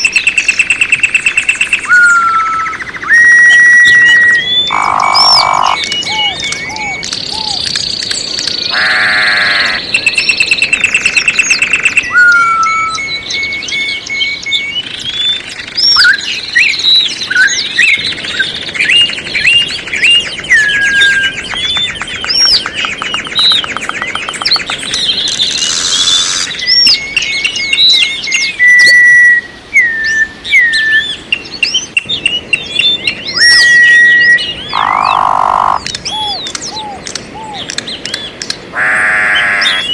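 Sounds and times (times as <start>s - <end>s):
songbirds chorus: 0.0s - 39.9s
fast rattling bird trill: 4.7s - 6.0s, 18.6s - 26.6s.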